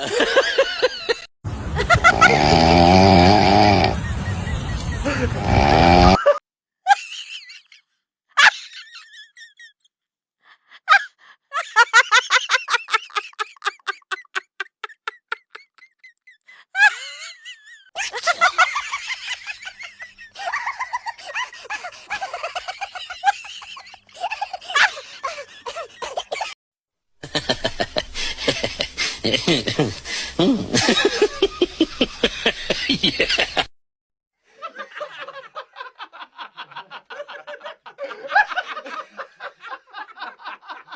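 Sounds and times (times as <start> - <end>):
person laughing: 0.0 - 7.6, 10.9 - 26.6, 27.2 - 33.7, 34.8 - 40.9.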